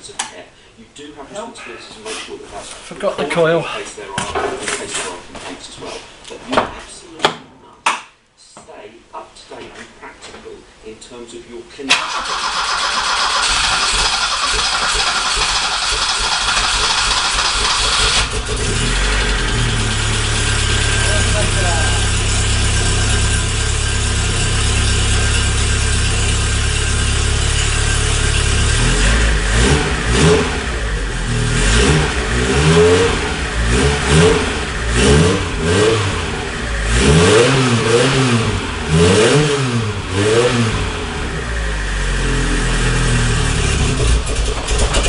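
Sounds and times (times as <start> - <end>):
car engine idling and revving: 12.6 - 45.0.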